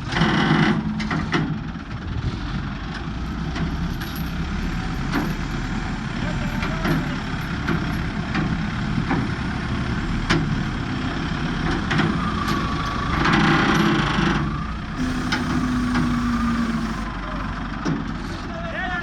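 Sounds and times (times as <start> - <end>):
motor running: 15.0 - 17.0.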